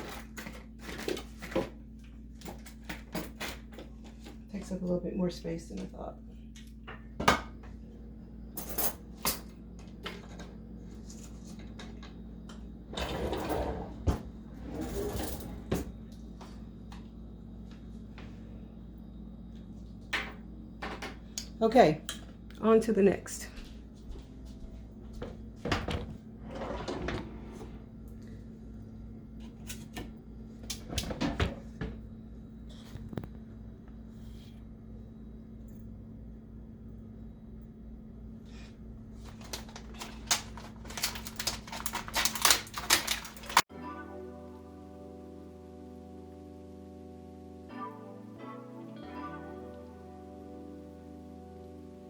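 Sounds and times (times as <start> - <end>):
faint steady hum: 0.0 - 52.0
drawer opening and closing: 12.9 - 15.9, 25.7 - 27.9
utensils clicking in a drawer: 40.0 - 43.6.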